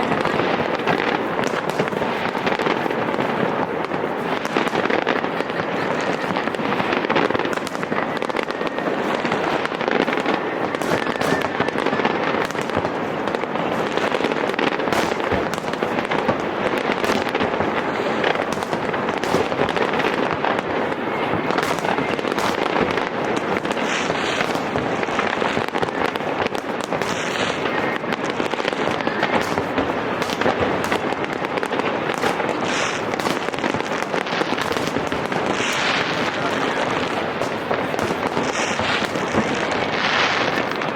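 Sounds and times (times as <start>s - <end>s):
fireworks bangs and crackling: 0.0s - 40.9s.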